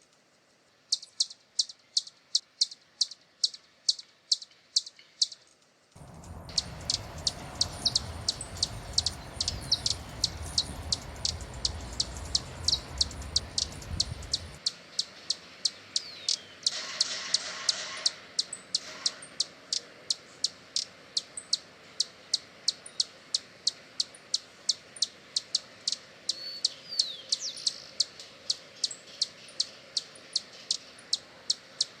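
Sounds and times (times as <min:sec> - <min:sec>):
low rumbling noise: 0:06.0 - 0:14.6
hummingbird chipping: 0:06.0 - 0:14.7.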